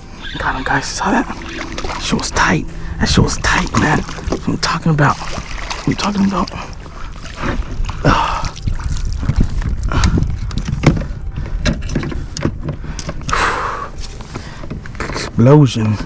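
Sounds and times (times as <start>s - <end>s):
steady low rumble: 0.0s - 15.0s
knocks and clicks in a boat: 3.4s - 16.0s.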